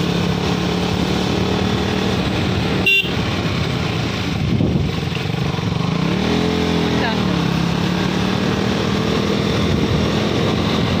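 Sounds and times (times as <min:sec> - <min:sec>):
motorcycle engine running: 0:00.0 - 0:11.0
short horn toot: 0:02.8 - 0:03.2.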